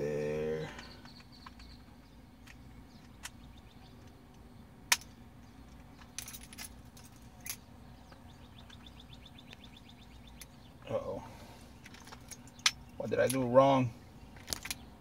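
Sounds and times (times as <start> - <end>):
sharp metal clicks: 0.9 - 6.8
keys jingling: 6.0 - 7.6.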